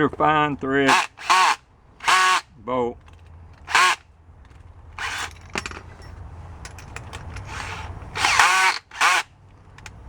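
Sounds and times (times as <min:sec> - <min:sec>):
drill chuck ratcheting clicks: 0:00.8 - 0:02.4, 0:03.1 - 0:04.0, 0:05.0 - 0:05.8, 0:06.8 - 0:10.0.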